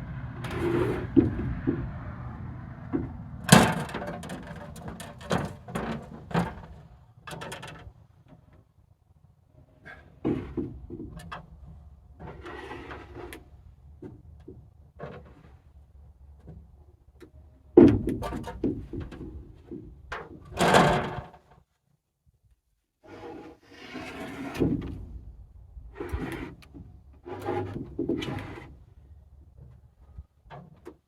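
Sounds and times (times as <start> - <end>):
low engine hum: 0.0 - 4.8
knocks and clunks: 0.4 - 7.8, 10.2 - 11.8, 17.2 - 21.4, 24.5 - 25.2.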